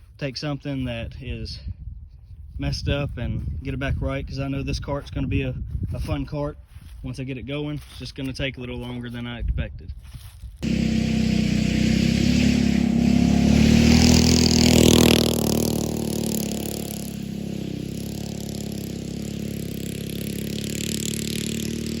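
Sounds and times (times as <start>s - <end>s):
go-kart engine running: 10.6s - 22.0s.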